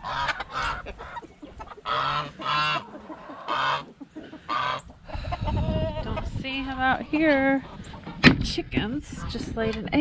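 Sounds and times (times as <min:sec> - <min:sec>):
hen cackling: 0:00.0 - 0:06.4.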